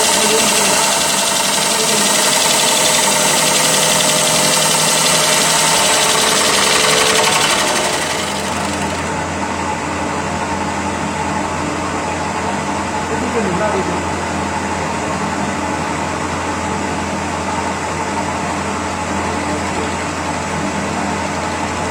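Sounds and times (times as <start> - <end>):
lathe machine noise: 0.0 - 10.4.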